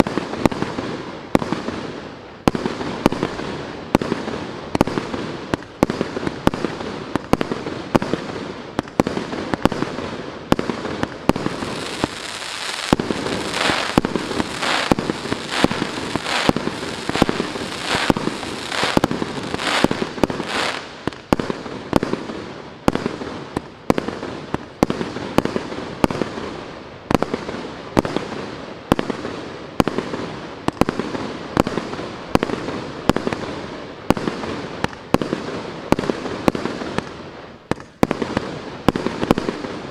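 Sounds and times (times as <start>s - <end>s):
firework battery shots: 11.3s - 22.1s.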